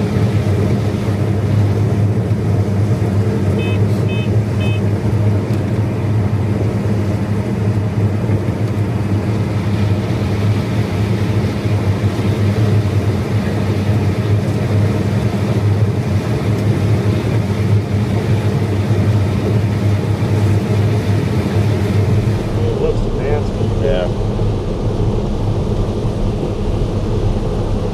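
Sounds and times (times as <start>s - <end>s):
combine harvester engine hum: 0.0s - 27.9s.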